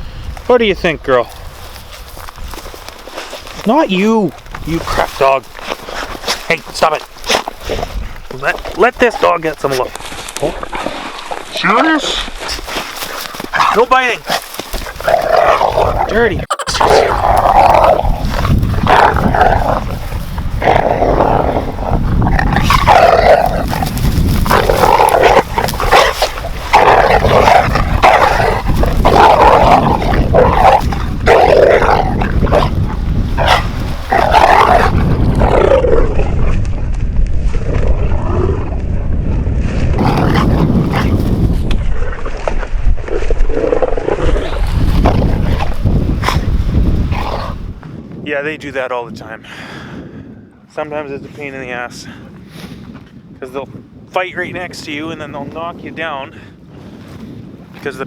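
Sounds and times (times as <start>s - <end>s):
dogs growling: 3.2s - 39.2s, 39.9s - 47.8s.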